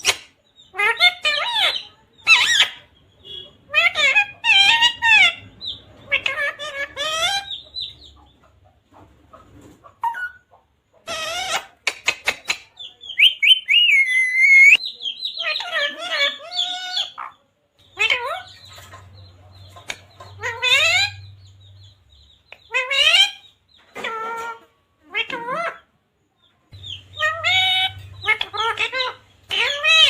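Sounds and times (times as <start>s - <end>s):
parrot chirps and squawks: 0.0s - 8.1s, 10.0s - 19.1s, 19.8s - 21.4s, 22.5s - 25.9s, 26.8s - 30.0s
parrot whistle: 13.2s - 14.8s.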